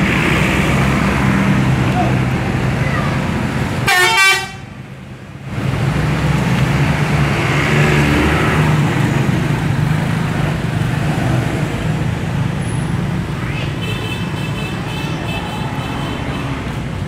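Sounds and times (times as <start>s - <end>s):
bus engine running: 0.0s - 17.0s
road noise: 0.0s - 17.0s
horn toot: 3.9s - 4.7s.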